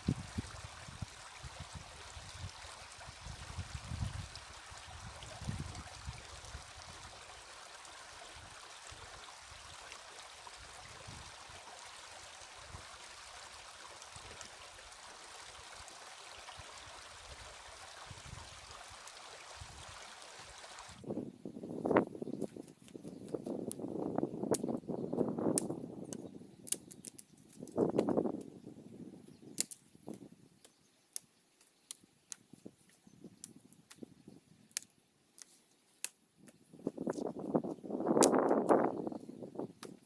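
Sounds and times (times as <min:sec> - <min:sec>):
running water rushing: 0:00.0 - 0:21.0.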